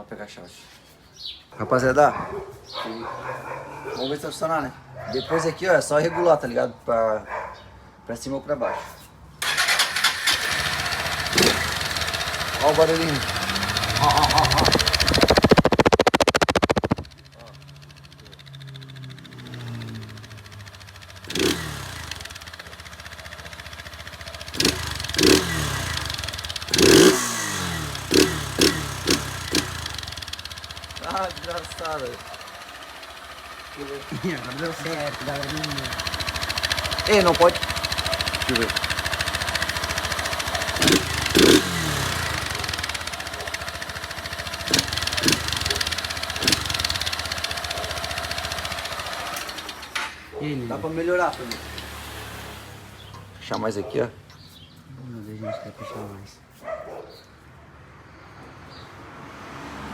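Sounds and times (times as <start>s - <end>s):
motorcycle engine revving: 9.4s - 54.7s.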